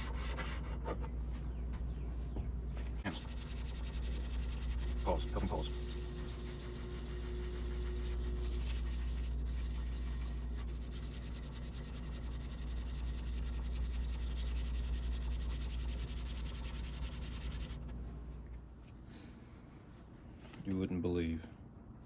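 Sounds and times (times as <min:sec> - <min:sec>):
low steady hum: 0:00.0 - 0:22.0
blade rasping on sandpaper: 0:03.1 - 0:17.8.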